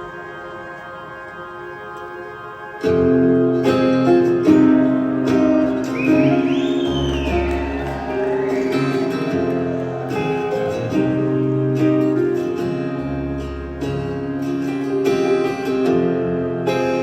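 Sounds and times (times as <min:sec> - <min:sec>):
high rising and falling glide: 0:06.8 - 0:12.1
bass line: 0:06.8 - 0:12.4.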